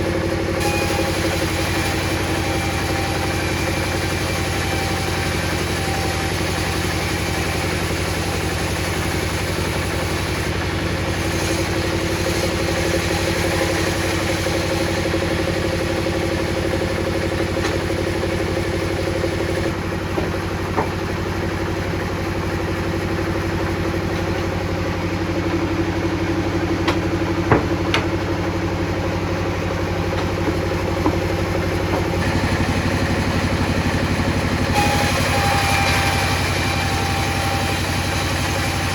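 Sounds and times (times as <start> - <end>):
table saw motor whirring: 0.0 - 19.8, 31.0 - 38.9.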